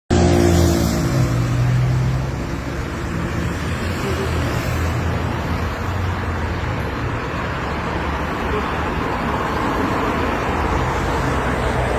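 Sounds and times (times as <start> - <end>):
road traffic noise: 0.1 - 11.9.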